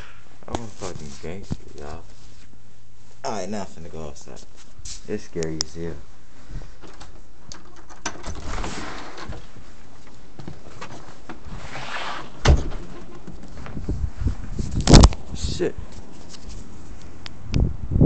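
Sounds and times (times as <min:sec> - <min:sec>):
door thump: 0:12.4 - 0:13.4.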